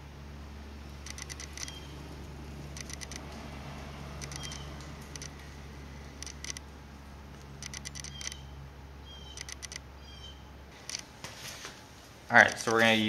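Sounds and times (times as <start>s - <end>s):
low steady hum: 0.0s - 13.0s
autofocus motor clicks and chirps: 0.8s - 11.1s.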